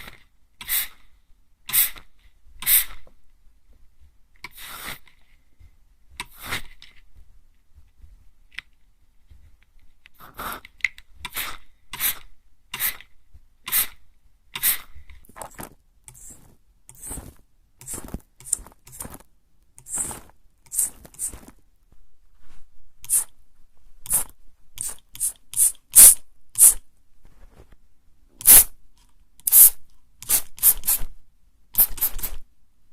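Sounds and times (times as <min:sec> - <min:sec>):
mist sprayer hissing puffs: 0:28.4 - 0:28.7, 0:29.5 - 0:31.0, 0:31.8 - 0:32.4.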